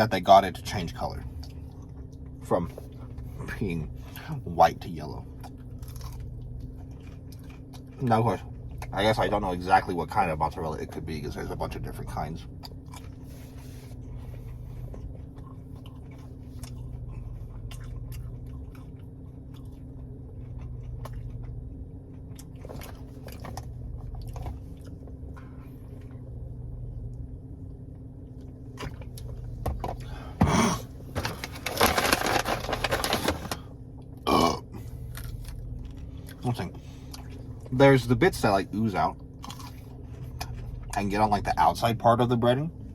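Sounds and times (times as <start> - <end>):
steady low hum: 0.0 - 42.9
person chewing crunchy food: 5.3 - 8.9, 12.5 - 26.2, 34.2 - 36.4, 39.3 - 41.0.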